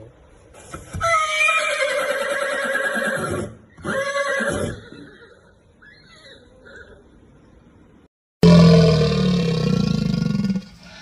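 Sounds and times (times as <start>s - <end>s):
horse whinnying: 1.0s - 5.6s.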